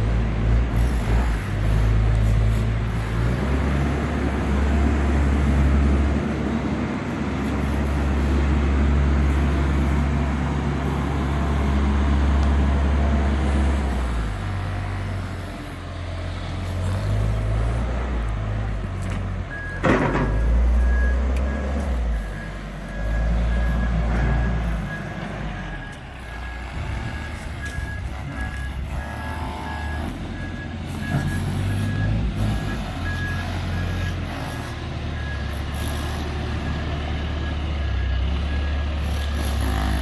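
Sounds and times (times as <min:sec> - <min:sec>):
diesel engine working under load: 0:00.0 - 0:40.0
reversing alarm beeping: 0:19.5 - 0:40.0.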